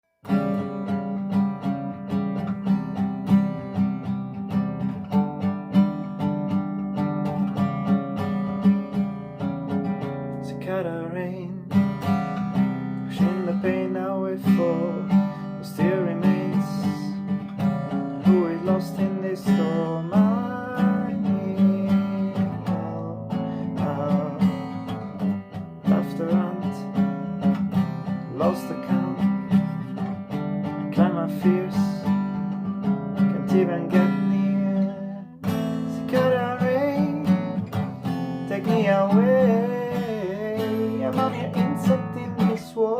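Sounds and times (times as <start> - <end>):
fingerstyle acoustic guitar: 0.1 - 42.9
person singing: 10.3 - 11.8, 13.1 - 27.4, 28.0 - 30.0, 30.6 - 42.9.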